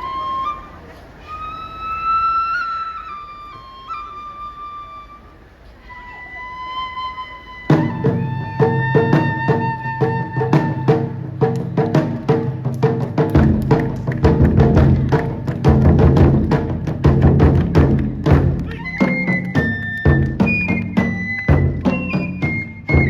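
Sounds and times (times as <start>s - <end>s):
bamboo flute melody: 0.0s - 23.0s
taiko drum strikes: 7.7s - 23.0s.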